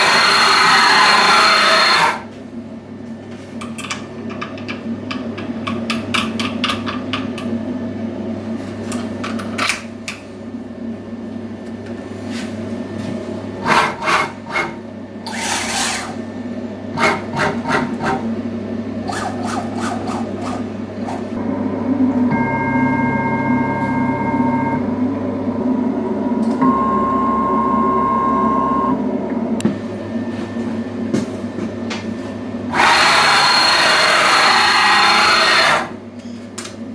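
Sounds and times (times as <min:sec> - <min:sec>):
motor whine: 0:00.0 - 0:02.3, 0:19.0 - 0:30.9, 0:32.6 - 0:36.0
steady machine hum: 0:00.0 - 0:03.1, 0:10.0 - 0:36.9.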